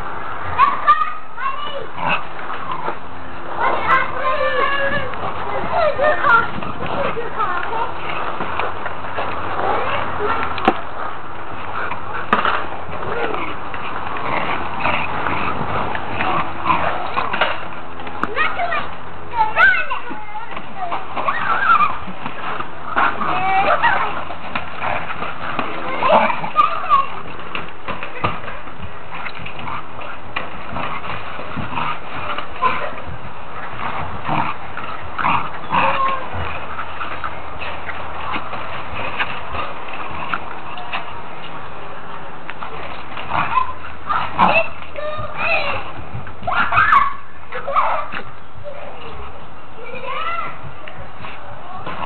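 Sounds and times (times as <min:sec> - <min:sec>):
steady background noise: 0:00.0 - 0:52.0
dogs scuffling and clattering: 0:00.4 - 0:52.0
dogs yipping and whining: 0:21.2 - 0:22.3, 0:22.9 - 0:27.3, 0:29.6 - 0:37.7, 0:46.4 - 0:48.2.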